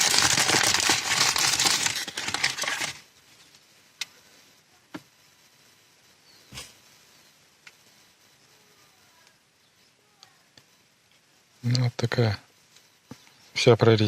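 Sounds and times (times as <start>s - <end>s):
packaging rustling and crinkling: 0.0s - 3.0s.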